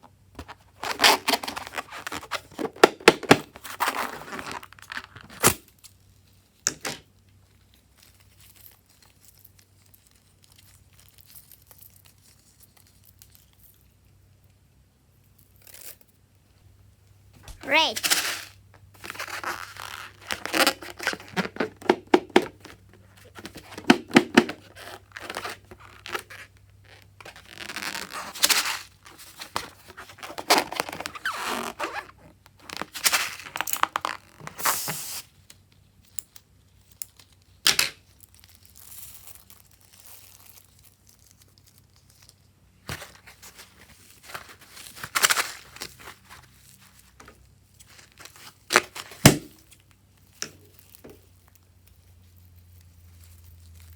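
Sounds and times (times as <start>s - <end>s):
slime stretching and crackling: 24.5s - 34.5s.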